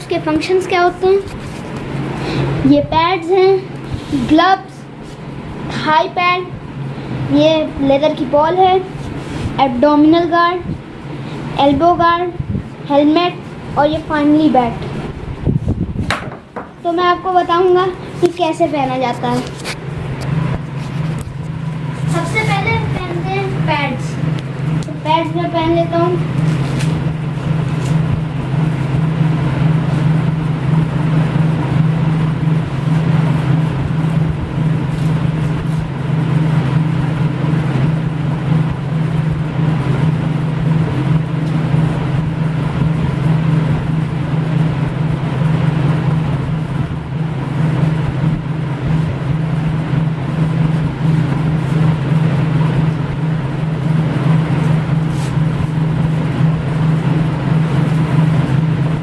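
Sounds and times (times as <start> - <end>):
machine humming: 0.0 - 59.0.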